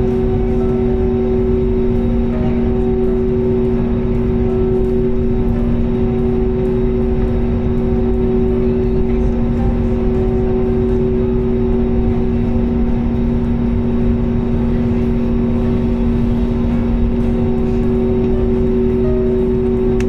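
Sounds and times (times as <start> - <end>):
jet engines droning in cabin: 0.0 - 20.0.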